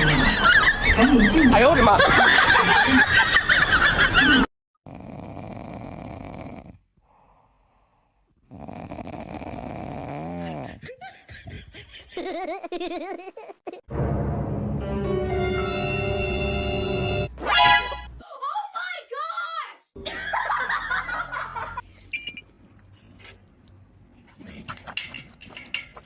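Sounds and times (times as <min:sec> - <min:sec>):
people laughing: 0:00.0 - 0:04.5, 0:20.0 - 0:21.8.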